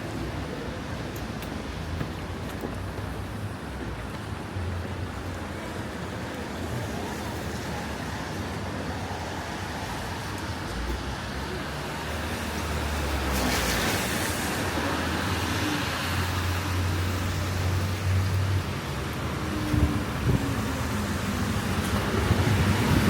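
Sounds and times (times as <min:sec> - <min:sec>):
traffic hiss on wet road: 0:00.0 - 0:23.0
vehicle swishing past: 0:12.7 - 0:16.4.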